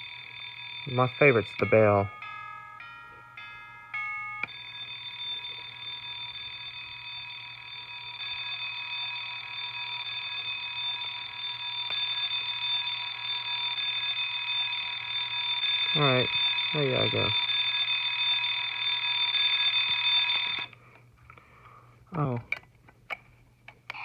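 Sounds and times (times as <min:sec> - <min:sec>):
electronic chime notes: 0:00.0 - 0:10.3
alarm clock ringing tone: 0:00.0 - 0:20.8.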